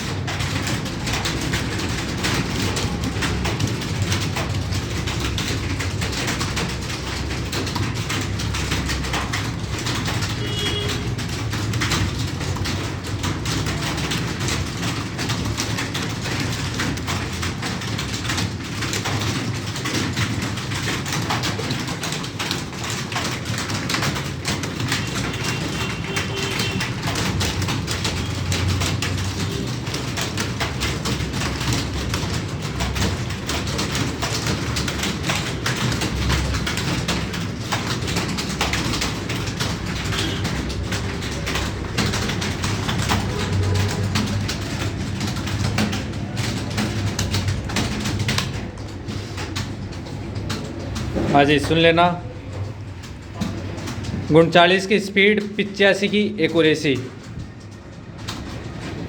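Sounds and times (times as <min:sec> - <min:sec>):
keyboard typing clatter: 0:00.0 - 0:59.0.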